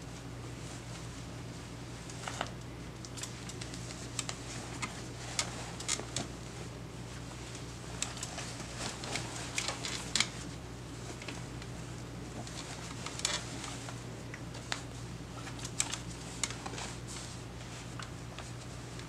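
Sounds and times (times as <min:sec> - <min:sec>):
low steady hum: 0:00.0 - 0:19.0
diaper crinkling and clicks: 0:08.0 - 0:10.4, 0:12.4 - 0:16.9.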